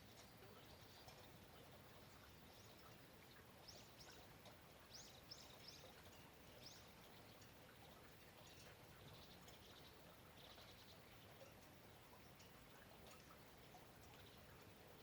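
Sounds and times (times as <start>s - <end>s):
bird chirping: 0.0s - 11.6s
faint rain hiss: 0.0s - 15.0s.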